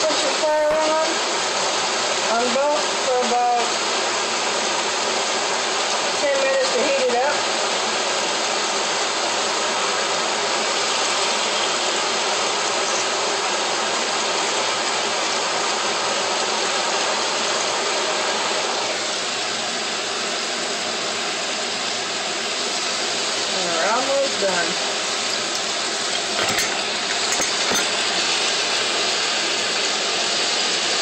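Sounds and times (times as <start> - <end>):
range hood fan running: 0.0 - 31.0.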